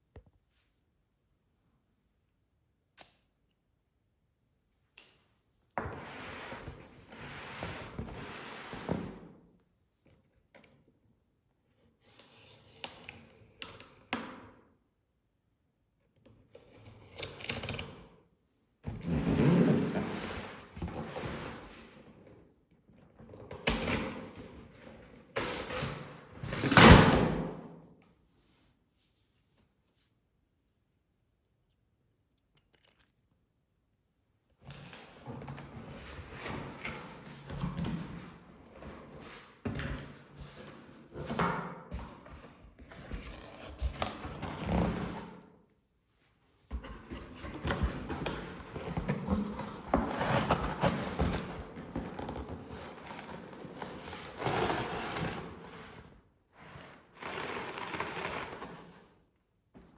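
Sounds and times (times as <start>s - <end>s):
packaging rustling and scraping: 46.8s - 59.2s.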